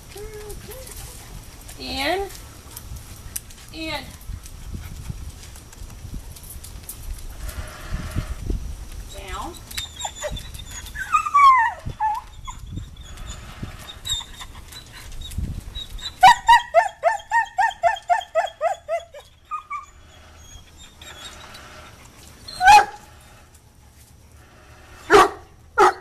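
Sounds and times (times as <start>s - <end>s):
dog whining cries: 9.1s - 23.3s
dog barking: 25.1s - 26.0s.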